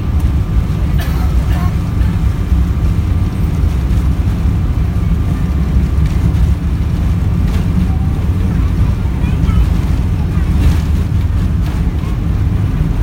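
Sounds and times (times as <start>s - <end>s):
faint whine: 0.0s - 13.0s
jet engines rumbling: 0.0s - 13.0s.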